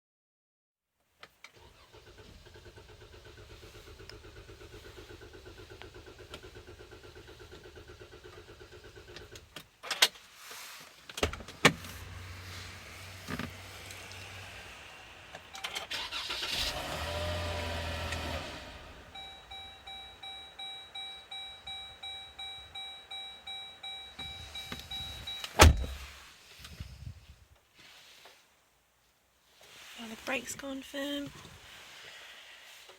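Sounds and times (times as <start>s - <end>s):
car engine cranking: 1.5s - 10.3s, 10.9s - 27.0s
starter whir: 1.6s - 9.5s, 11.2s - 19.9s
dashboard warning chime: 19.1s - 25.7s.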